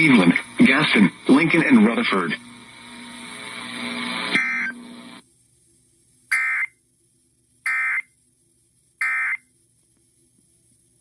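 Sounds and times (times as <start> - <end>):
raspy electronic data bursts: 6.3 - 6.7, 7.7 - 8.1, 9.0 - 9.4.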